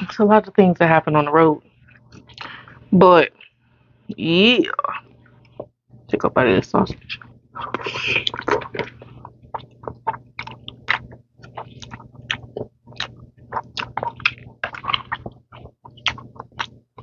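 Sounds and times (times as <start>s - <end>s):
faint low hum: 0.0s - 17.0s
mouth chewing food: 6.9s - 17.0s.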